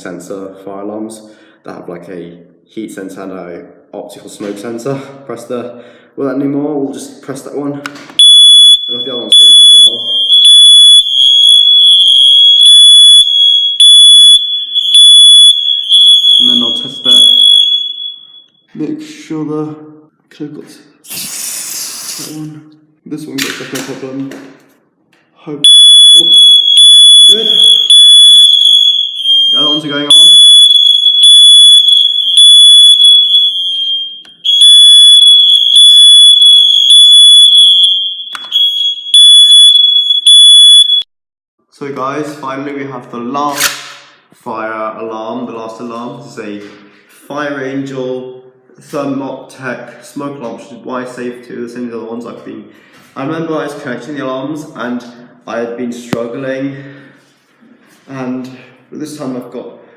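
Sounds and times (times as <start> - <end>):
high-pitched smoke alarm tone: 8.2 - 18.7, 25.6 - 41.1
smoke alarm beeps: 8.2 - 18.7, 25.6 - 41.1.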